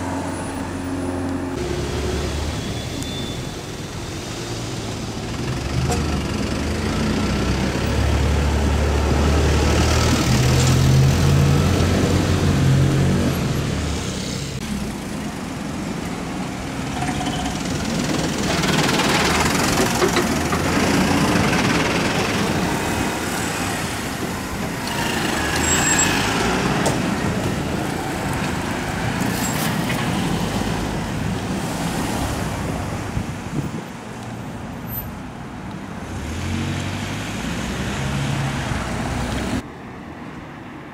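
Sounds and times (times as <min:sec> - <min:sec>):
large vehicle engine humming: 0:00.0 - 0:31.6
vehicles passing by: 0:00.0 - 0:40.9.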